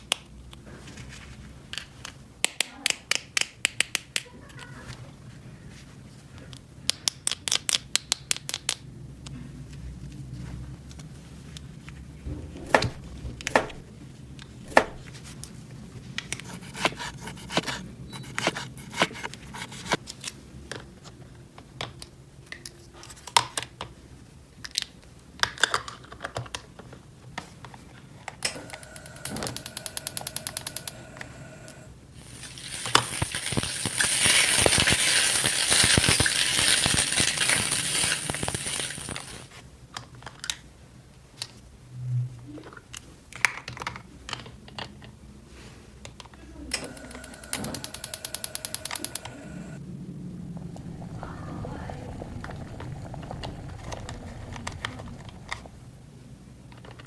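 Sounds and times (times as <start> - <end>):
loud hiss: 28.4 - 39.5, 46.8 - 49.8
plastic toy pieces clicking: 32.2 - 39.5, 46.8 - 49.4.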